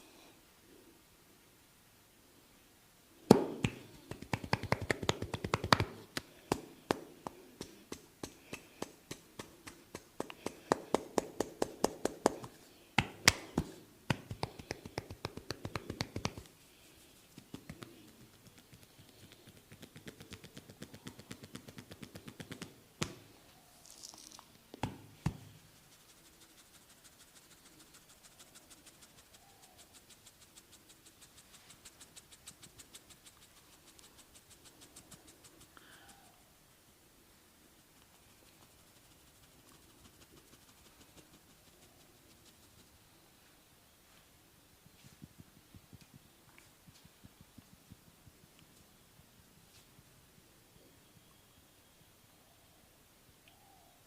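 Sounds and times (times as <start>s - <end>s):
hands drumming on head and shoulders: 3.3s - 16.5s
sharp hand slaps: 3.3s - 16.5s.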